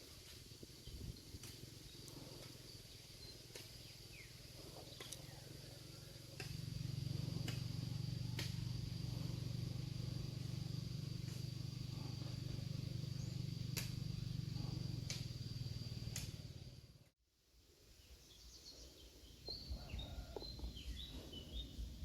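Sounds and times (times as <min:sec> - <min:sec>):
steady low hum: 0:00.0 - 0:17.2
sharp clicks: 0:16.1 - 0:16.4
bird chirps: 0:18.2 - 0:21.9.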